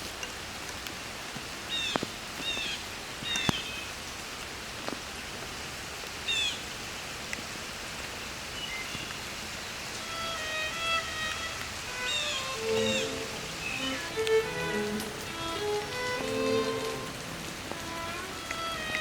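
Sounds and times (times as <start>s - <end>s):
steady rain falling: 0.0s - 19.0s
bird chirping: 12.0s - 15.5s.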